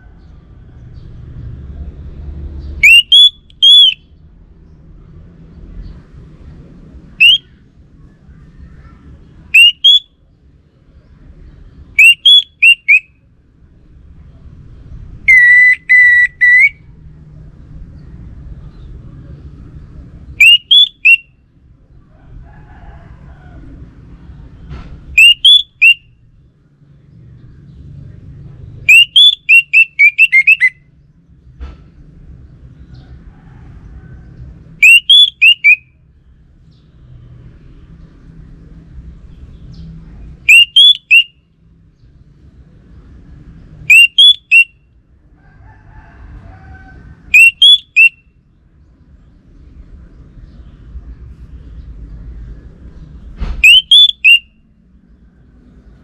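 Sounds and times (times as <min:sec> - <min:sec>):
thrush whistled song: 0:02.8 - 0:04.2, 0:07.2 - 0:07.6, 0:09.5 - 0:10.1, 0:12.0 - 0:13.2, 0:15.2 - 0:16.9, 0:20.4 - 0:21.3, 0:25.2 - 0:26.2, 0:28.9 - 0:30.9, 0:34.8 - 0:35.9, 0:40.4 - 0:41.4, 0:43.9 - 0:44.8, 0:47.3 - 0:48.3, 0:53.6 - 0:54.7.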